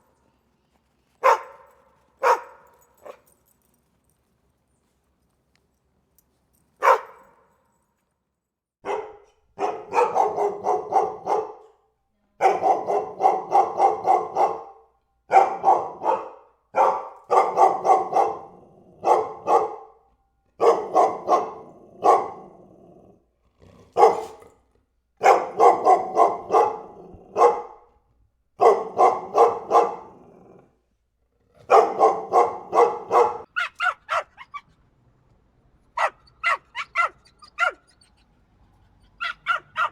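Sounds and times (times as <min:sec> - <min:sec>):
dog yapping: 0:01.2 - 0:01.6, 0:02.2 - 0:03.2, 0:06.8 - 0:07.2, 0:24.0 - 0:24.5, 0:31.7 - 0:34.7, 0:36.0 - 0:38.3, 0:39.1 - 0:39.9
dog yelp: 0:01.2 - 0:03.2, 0:06.8 - 0:07.2, 0:24.0 - 0:24.5, 0:31.7 - 0:34.8, 0:36.0 - 0:38.4, 0:39.0 - 0:39.9
dog barking: 0:01.2 - 0:03.3, 0:06.8 - 0:07.5, 0:08.8 - 0:22.7, 0:23.9 - 0:24.6, 0:25.2 - 0:28.0, 0:28.6 - 0:30.7, 0:31.6 - 0:34.6, 0:36.0 - 0:37.9, 0:39.2 - 0:39.9.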